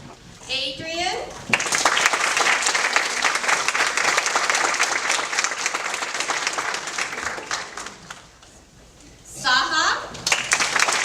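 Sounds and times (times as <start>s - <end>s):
audience applause: 1.5s - 8.4s, 10.2s - 11.0s.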